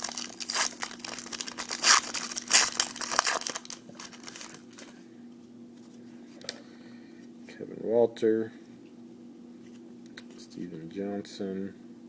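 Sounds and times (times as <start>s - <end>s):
wrapper tearing and crinkling: 0.0s - 5.0s.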